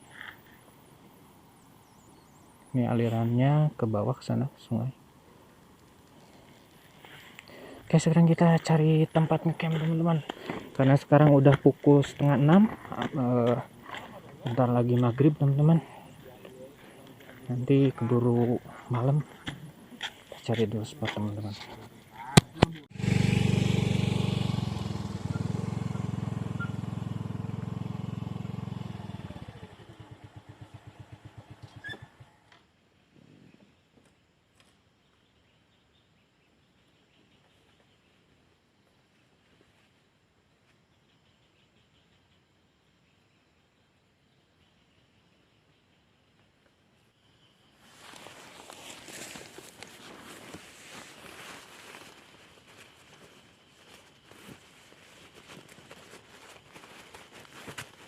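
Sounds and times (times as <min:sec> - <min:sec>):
footsteps on rough ground: 0:06.6 - 0:23.1, 0:47.8 - 0:58.0
motorcycle engine shutting off: 0:22.7 - 0:32.4.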